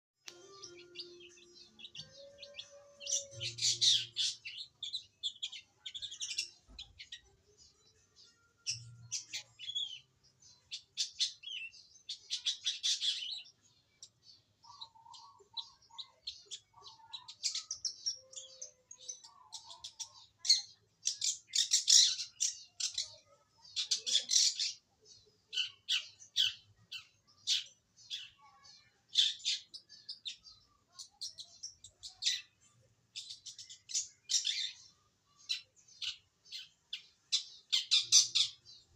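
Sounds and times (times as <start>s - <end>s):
bird singing chattering notes: 0.3s - 38.9s.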